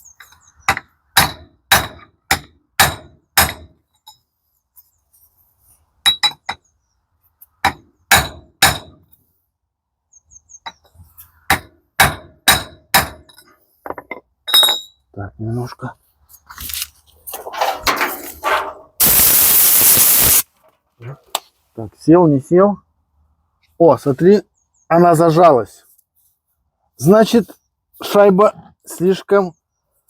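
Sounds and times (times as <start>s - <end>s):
hammer striking steel pipe: 11.5s - 13.2s.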